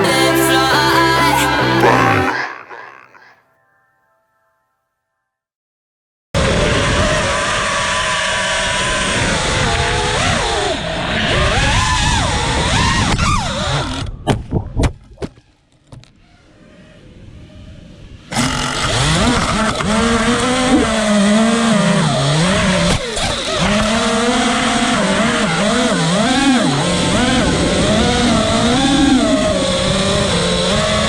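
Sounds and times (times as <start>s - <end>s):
quadcopter motors whining: 6.4s - 14.2s, 16.2s - 31.0s.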